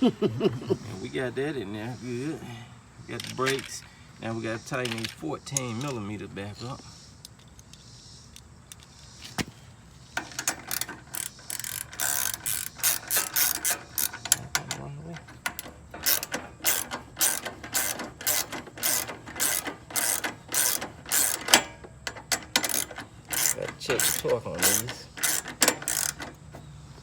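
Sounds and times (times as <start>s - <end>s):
ratchet wrench clicking: 10.2s - 26.4s.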